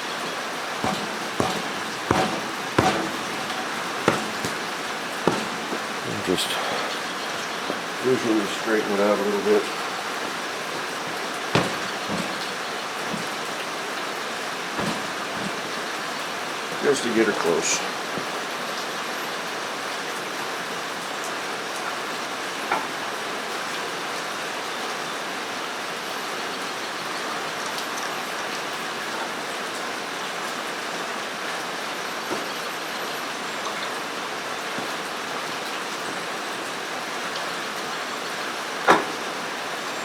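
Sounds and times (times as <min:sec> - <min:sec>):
rain on a metal roof: 0:00.0 - 0:40.0
sharp knocks: 0:00.8 - 0:06.8, 0:11.5 - 0:13.7, 0:14.6 - 0:16.0.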